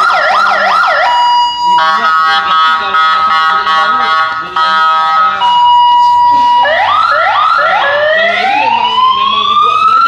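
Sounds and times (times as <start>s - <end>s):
electronic siren switching tones: 0.0s - 10.0s.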